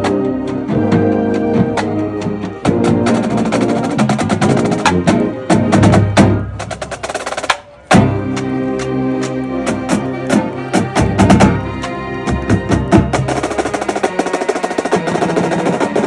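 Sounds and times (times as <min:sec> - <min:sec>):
marching band playing: 0:00.0 - 0:16.0
rapid drum strokes: 0:00.0 - 0:16.0.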